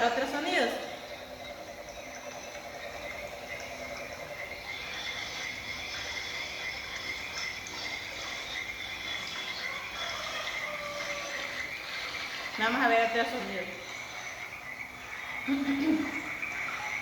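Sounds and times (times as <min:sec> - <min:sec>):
chorus of frogs calling: 0:00.0 - 0:17.0.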